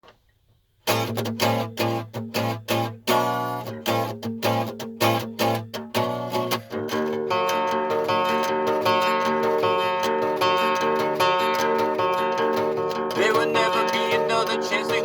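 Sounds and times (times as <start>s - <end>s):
guitar strumming: 0.8s - 15.0s.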